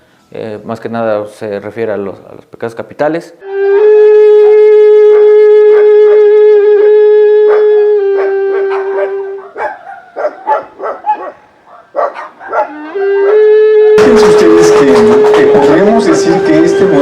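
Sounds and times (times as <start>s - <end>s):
cane trumpet long note: 3.4s - 9.4s, 12.7s - 17.0s
dogs barking: 5.0s - 6.6s, 7.4s - 13.5s, 15.4s - 16.0s.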